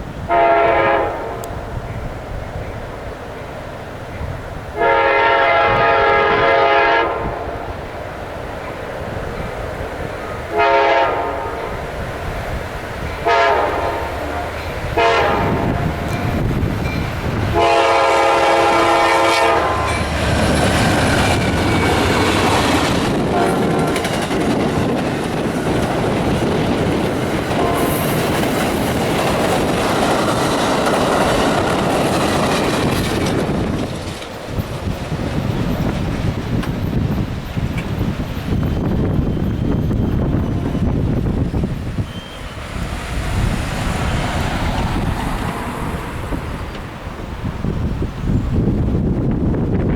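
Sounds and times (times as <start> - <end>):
locomotive air horn: 0.3 - 1.6, 4.8 - 7.7, 10.5 - 11.8, 13.2 - 16.1, 17.5 - 20.2, 23.3 - 24.0, 27.6 - 28.3
train wheels clattering on rails: 7.4 - 49.9.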